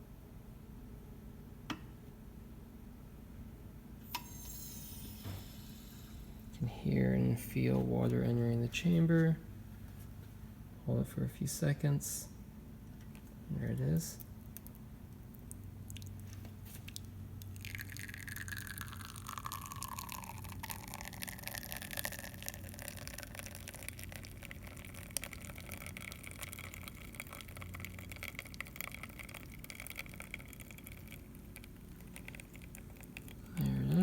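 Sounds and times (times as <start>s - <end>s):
espresso dripping into cup: 16.9s - 33.9s
espresso machine hum: 17.6s - 34.0s.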